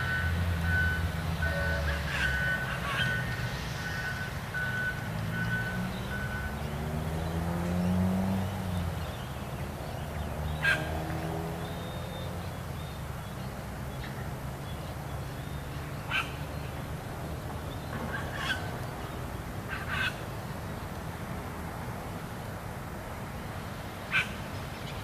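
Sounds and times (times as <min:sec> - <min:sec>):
excavator diesel engine running: 0:00.0 - 0:10.2.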